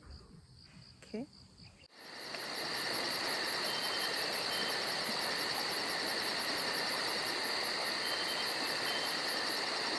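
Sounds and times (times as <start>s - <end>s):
insects chirping pulsing trill: 0.0s - 9.9s
high whine and hiss: 1.9s - 9.9s.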